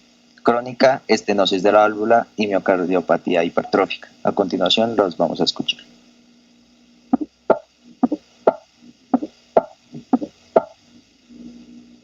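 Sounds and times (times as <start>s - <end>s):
faint steady hum: 0.0s - 12.0s
heartbeat thuds: 7.2s - 10.8s.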